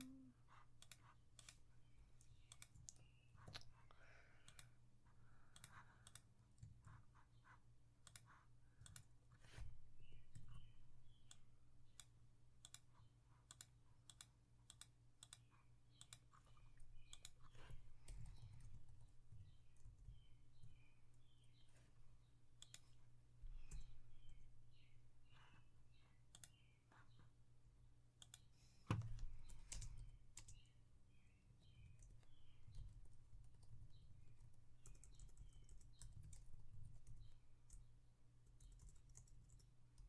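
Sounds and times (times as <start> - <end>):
mouse and keyboard clicking: 2.2 - 3.7, 5.5 - 9.1, 11.2 - 20.8, 22.6 - 22.9, 34.8 - 36.5.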